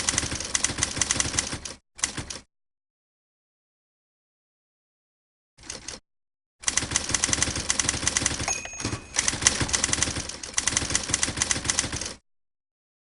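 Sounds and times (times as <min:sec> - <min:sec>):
typewriter typing: 0:00.0 - 0:02.5, 0:06.6 - 0:12.2
typewriter bell ring: 0:08.3 - 0:10.2.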